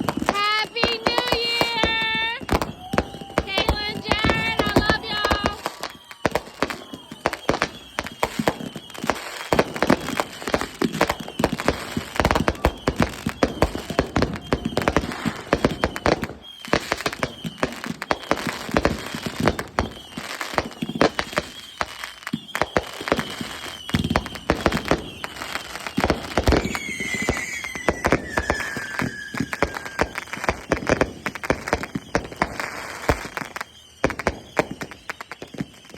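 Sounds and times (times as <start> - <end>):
firework whistles: 0.0 - 35.9
fireworks bangs and crackles: 0.0 - 35.9.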